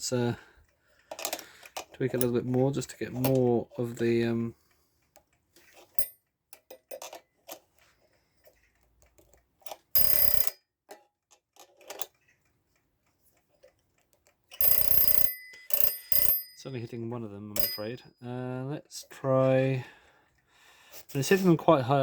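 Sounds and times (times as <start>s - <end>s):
alarm clock bell ringing: 10.0s - 10.6s, 14.6s - 18.6s.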